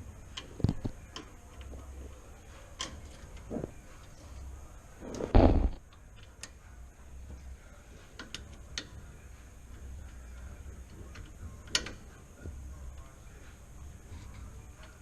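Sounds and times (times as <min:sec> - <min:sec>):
metal tools clicking and tapping: 0:02.7 - 0:03.5, 0:08.2 - 0:09.1, 0:09.7 - 0:12.2.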